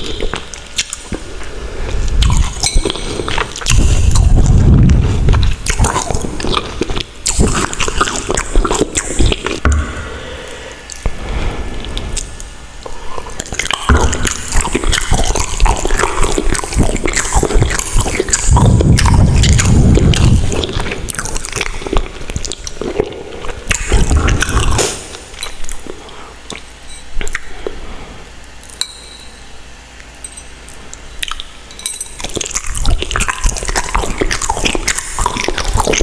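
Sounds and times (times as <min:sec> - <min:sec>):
chewing noodles: 0:00.0 - 0:09.6, 0:10.9 - 0:27.8, 0:30.7 - 0:36.0
wet mouth clicks and smacks: 0:00.2 - 0:01.2, 0:11.8 - 0:23.0, 0:23.6 - 0:27.5, 0:30.7 - 0:31.6, 0:32.2 - 0:36.0.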